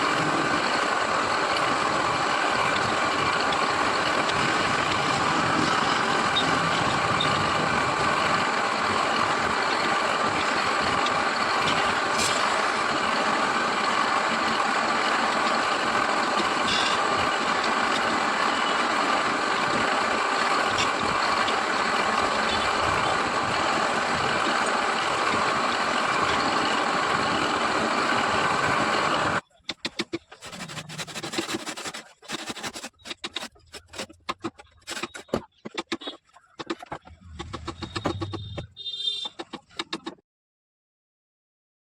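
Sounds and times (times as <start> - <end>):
wood lathe running: 0.0 - 29.4, 30.3 - 35.4
faint scrapes and knocks: 29.8 - 38.6.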